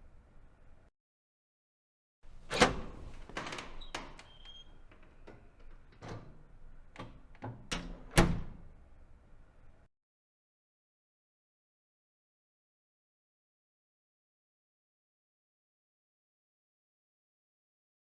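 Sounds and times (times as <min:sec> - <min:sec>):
door squeak: 0:02.3 - 0:08.6
metal door clunking: 0:02.3 - 0:09.8.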